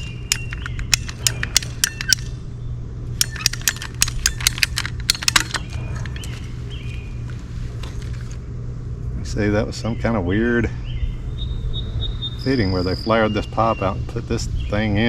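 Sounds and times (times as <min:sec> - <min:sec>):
pipe cutter clicks and snaps: 0:00.0 - 0:02.4, 0:03.2 - 0:06.2.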